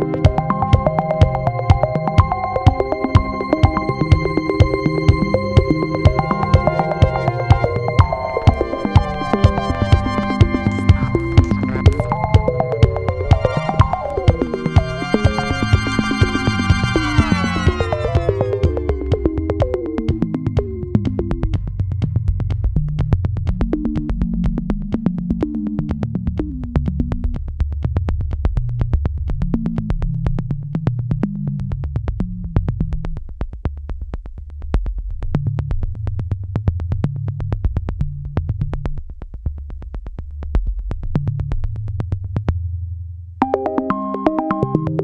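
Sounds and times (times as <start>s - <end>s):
higher synth melody: 0.0s - 20.4s, 43.4s - 45.0s
electronic music with beat: 0.0s - 21.6s, 43.4s - 45.0s
low synthesizer bass line: 0.0s - 27.4s.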